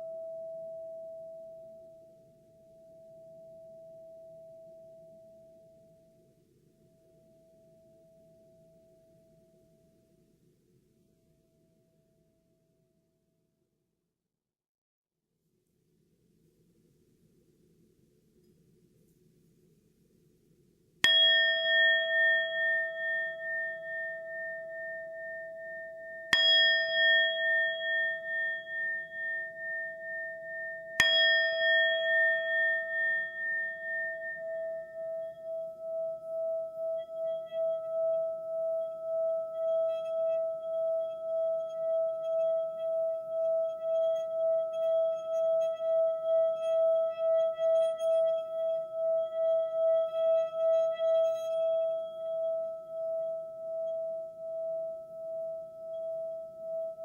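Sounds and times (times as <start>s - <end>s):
singing bowl ringing: 0.0s - 6.1s, 21.0s - 57.0s.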